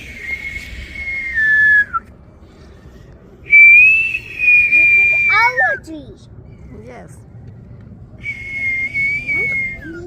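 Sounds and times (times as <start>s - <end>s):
person whistling long notes: 0.0s - 2.1s, 3.5s - 5.8s, 8.2s - 10.0s.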